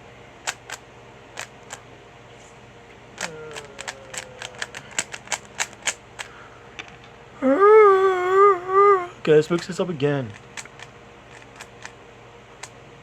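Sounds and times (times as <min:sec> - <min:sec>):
puzzle cube clicking as turned: 0:00.4 - 0:00.8, 0:01.4 - 0:01.8, 0:03.2 - 0:06.3, 0:09.6 - 0:12.0.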